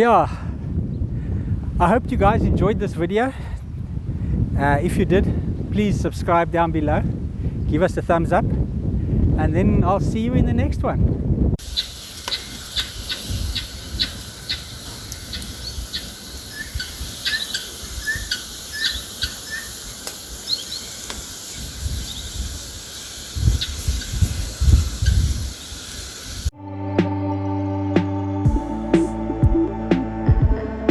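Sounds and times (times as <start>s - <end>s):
wind gusting on microphone: 0.0s - 26.5s
outdoor background hiss: 11.6s - 26.5s
small birds chirping: 11.6s - 26.5s.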